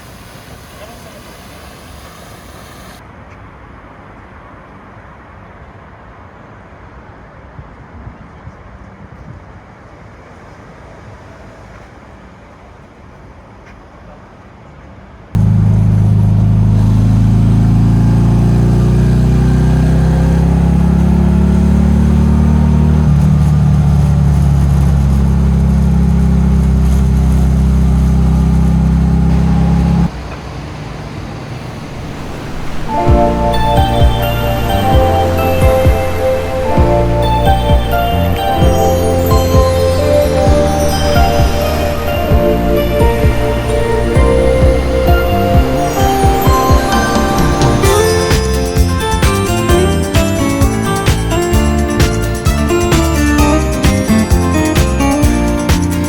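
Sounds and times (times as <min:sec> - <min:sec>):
car road and engine rumble: 0:15.4 - 0:56.0
loud bass-heavy music: 0:32.0 - 0:56.0.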